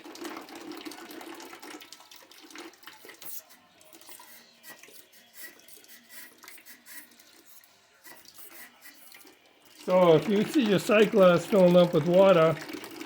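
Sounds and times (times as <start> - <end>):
water trickling into a bucket: 0.0 - 13.0
small clicks and scrapes: 2.9 - 9.4.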